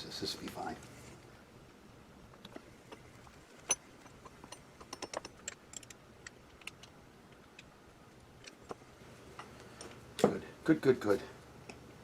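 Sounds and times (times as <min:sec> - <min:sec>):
small metal parts clicking: 0:02.4 - 0:07.7.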